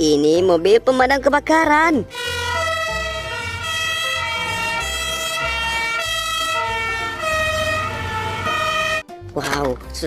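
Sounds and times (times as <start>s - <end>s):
pulsing bass line: 2.0s - 9.0s
electronic melody: 2.1s - 9.1s.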